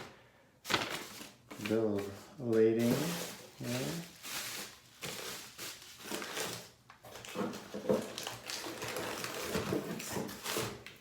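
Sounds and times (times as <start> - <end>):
packing rustling and scraping: 2.8 - 10.9.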